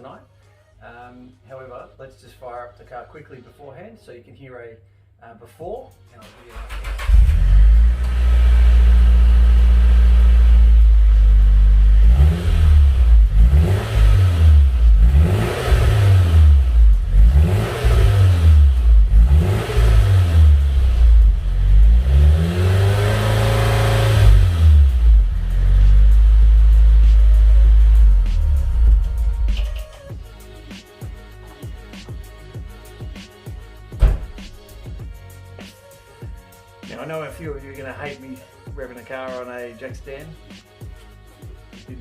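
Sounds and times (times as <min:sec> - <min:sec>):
car engine idling and revving: 0:06.6 - 0:30.4.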